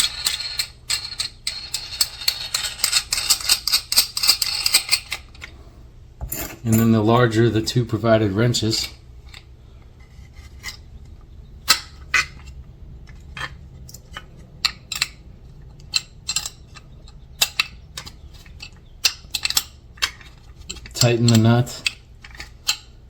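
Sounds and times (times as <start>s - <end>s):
metal wrench clicking on a bolt: 14.6s - 15.2s, 15.8s - 22.9s.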